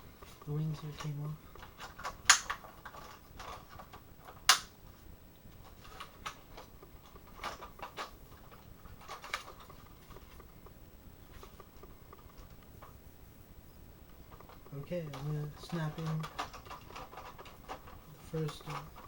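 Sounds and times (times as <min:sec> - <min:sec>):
plastic toy parts clicking: 0:01.6 - 0:04.7, 0:14.3 - 0:19.0.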